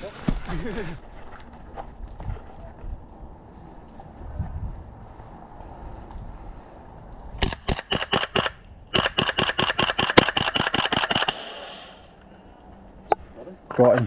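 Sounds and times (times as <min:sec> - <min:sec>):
airsoft gun rapid shots: 0:07.4 - 0:11.6.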